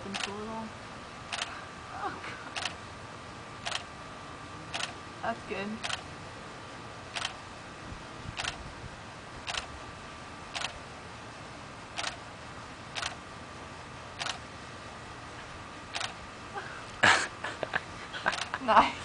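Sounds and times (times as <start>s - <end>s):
camera shutter firing: 3.6s - 3.9s, 7.2s - 7.4s, 8.4s - 8.6s, 9.5s - 9.7s, 10.6s - 10.8s, 12.0s - 12.2s, 14.2s - 14.4s, 15.9s - 16.2s, 18.3s - 18.5s.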